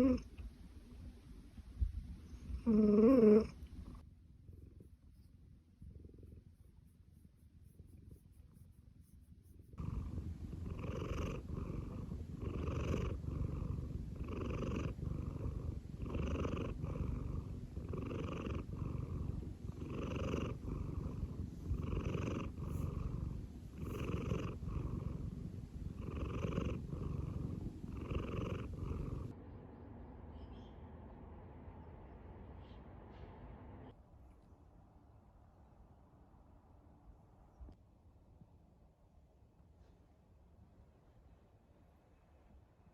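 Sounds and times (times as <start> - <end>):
cat purring: 0.0 - 29.5.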